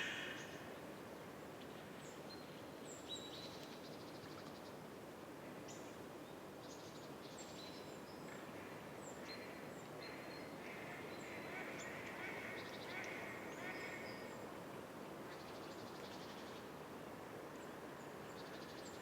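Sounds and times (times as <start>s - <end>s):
small birds calling: 0.0s - 0.6s
steady background hiss: 0.0s - 7.7s.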